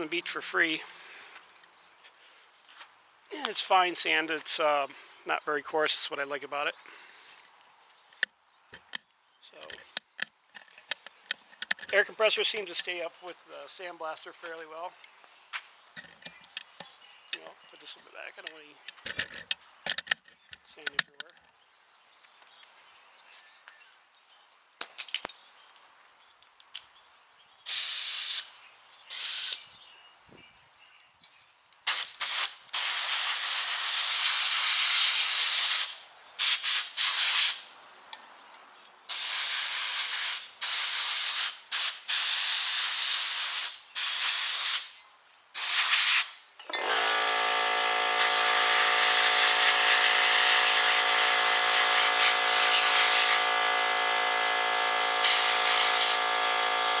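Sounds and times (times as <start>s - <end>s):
sandblaster gun hissing bursts: 27.7s - 28.5s, 29.1s - 29.6s, 31.9s - 37.6s, 39.1s - 45.0s, 45.6s - 46.4s, 48.1s - 53.6s, 55.1s - 56.3s
air compressor humming: 46.7s - 57.0s.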